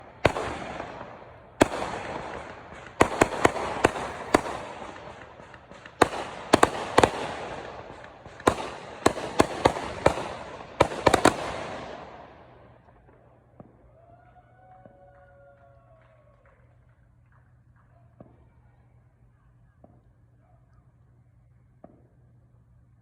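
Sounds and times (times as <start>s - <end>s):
fireworks bangs echoing: 0.0s - 13.8s.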